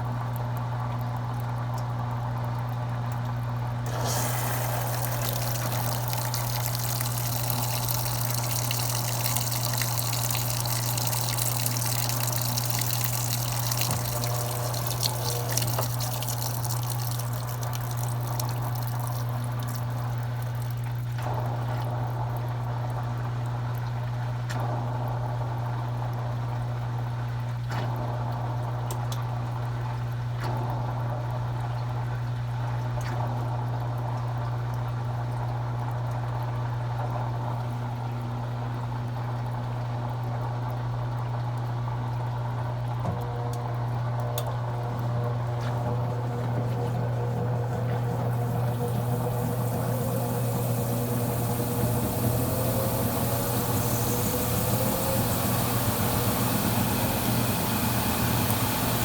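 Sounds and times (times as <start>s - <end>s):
water running through washing machine: 0.0s - 59.0s
steady electric hum: 3.6s - 21.6s, 43.4s - 59.0s.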